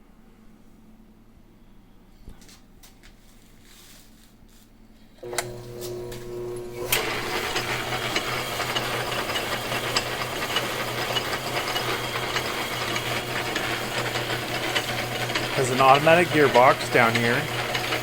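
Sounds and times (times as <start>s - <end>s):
electric motor hum: 5.2s - 18.0s
gears whirring and rattling: 6.8s - 18.0s.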